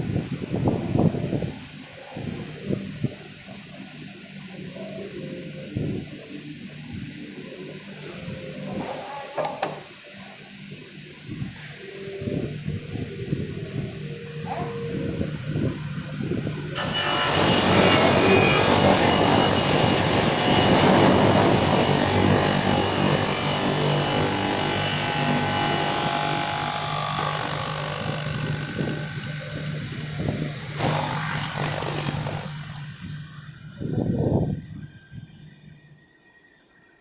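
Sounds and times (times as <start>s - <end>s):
dense machine noise: 0.0s - 37.0s
cutting saw high whine: 10.4s - 36.6s.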